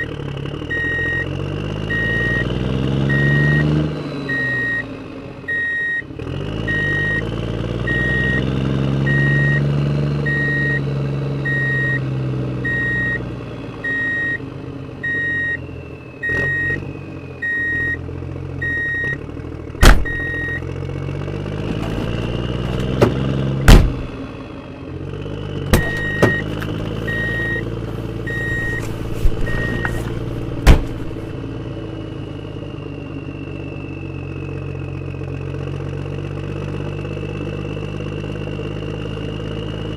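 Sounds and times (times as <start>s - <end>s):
engine rising and falling in pitch: 0.0s - 39.9s
reversing beeper: 0.7s - 19.2s, 19.8s - 20.7s, 25.8s - 35.6s
sharp loud knocks: 22.8s - 24.0s.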